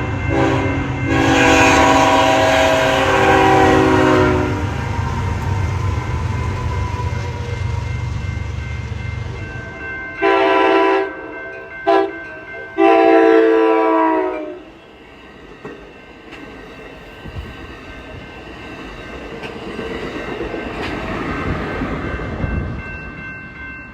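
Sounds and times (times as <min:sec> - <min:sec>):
locomotive air horn: 0:00.0 - 0:05.0, 0:10.2 - 0:11.2, 0:11.9 - 0:12.1, 0:12.8 - 0:14.7
train rumbling by: 0:00.0 - 0:23.9.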